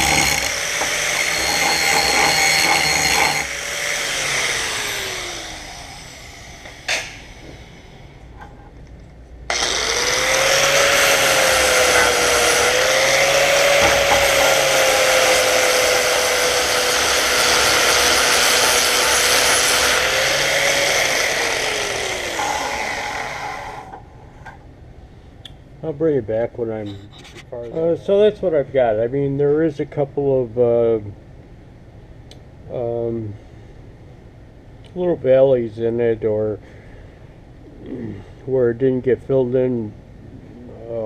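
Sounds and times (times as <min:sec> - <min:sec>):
electric grinder sanding metal: 0:00.0 - 0:08.0, 0:09.5 - 0:24.0.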